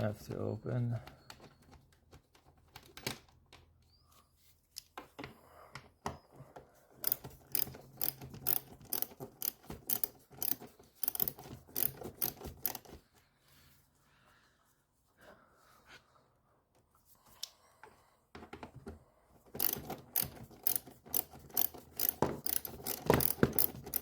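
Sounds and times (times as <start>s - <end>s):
socket ratchet clicking: 7.0s - 13.0s, 19.6s - 24.0s.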